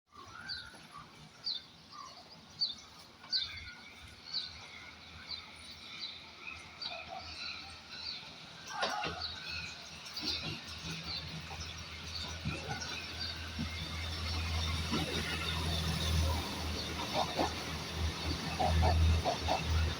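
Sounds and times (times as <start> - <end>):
birds chirping: 0.2 - 19.9.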